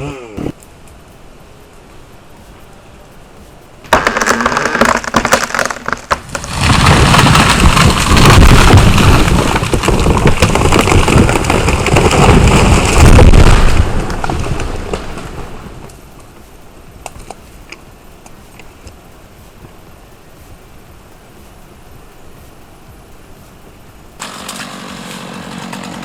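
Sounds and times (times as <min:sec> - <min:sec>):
tree crashing down with rumble: 0:03.9 - 0:16.0
tree trunk cracking: 0:03.9 - 0:16.3, 0:24.2 - 0:26.0.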